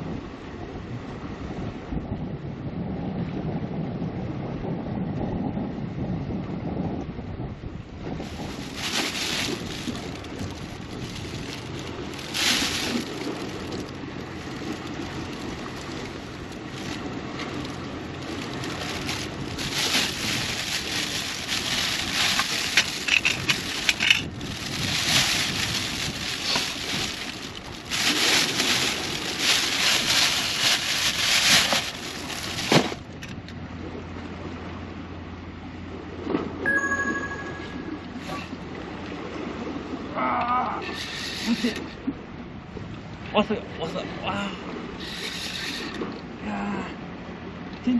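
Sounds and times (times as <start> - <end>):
wind buffeting microphone: 0.0 - 36.6, 41.9 - 45.0
surf: 8.1 - 33.2.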